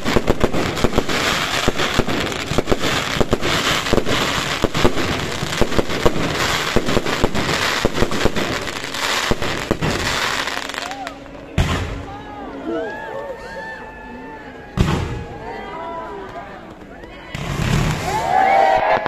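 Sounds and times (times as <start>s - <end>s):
fireworks bangs and pops: 0.0s - 12.0s, 14.8s - 15.3s, 16.2s - 19.0s
fireworks crackling: 0.0s - 12.2s, 16.1s - 19.0s.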